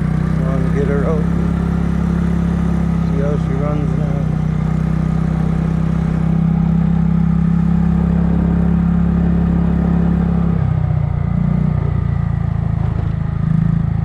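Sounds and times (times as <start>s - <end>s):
scooter engine running: 0.0s - 14.0s.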